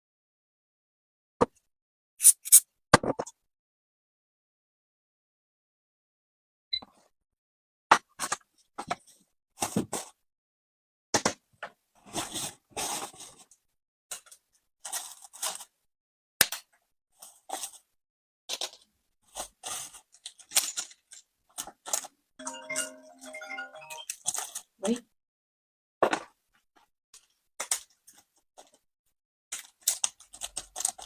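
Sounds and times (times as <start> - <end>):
packaging tearing: 2.2 - 2.6, 29.6 - 31.0
packaging rustling: 29.6 - 31.0.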